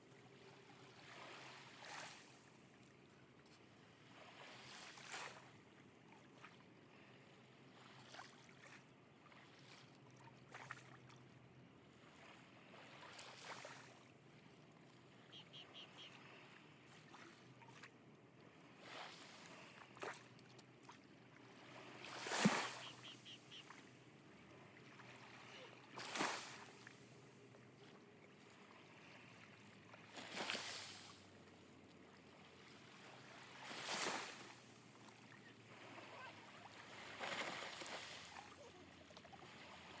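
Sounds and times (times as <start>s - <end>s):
small waves washing onto shore: 18.6s - 40.0s.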